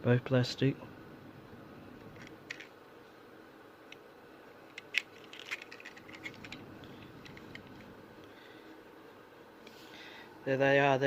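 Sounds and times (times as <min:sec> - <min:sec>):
toy cars clicking and rattling: 0:02.2 - 0:02.7, 0:04.7 - 0:06.6.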